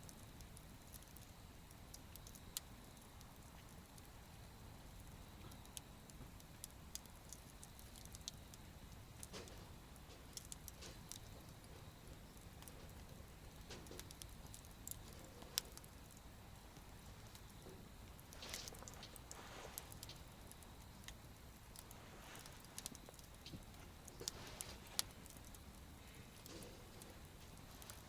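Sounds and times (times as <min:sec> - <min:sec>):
campfire crackling: 0:00.0 - 0:28.0
faint low rumble: 0:11.0 - 0:28.0.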